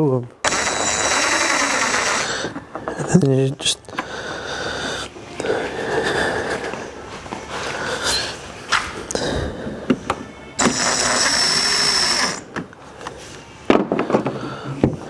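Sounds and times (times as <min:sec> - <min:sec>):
power drill whining: 0:00.4 - 0:02.6, 0:10.6 - 0:12.5.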